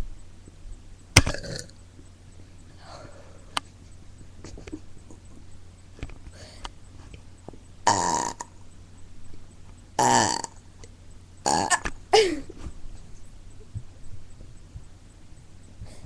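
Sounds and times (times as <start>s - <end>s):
person burping: 1.2s - 1.7s, 7.9s - 8.5s, 10.0s - 10.6s, 11.5s - 12.5s.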